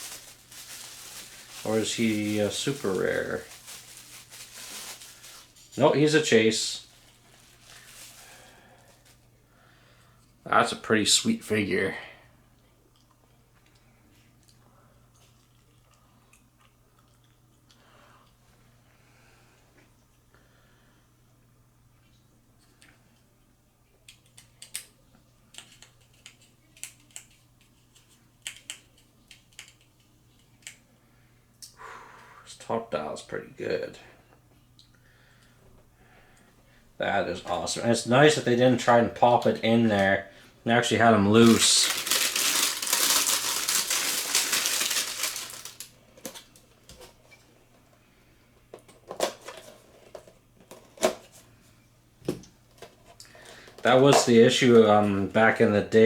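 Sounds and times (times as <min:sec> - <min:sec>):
plastic packaging crinkling: 0:00.0 - 0:09.2, 0:41.2 - 0:47.2.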